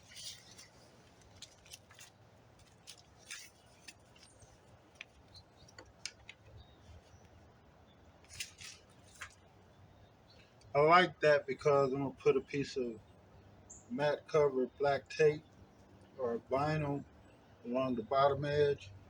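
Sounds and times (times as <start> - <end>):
adhesive tape rustling: 0.0 - 7.0, 8.2 - 9.5.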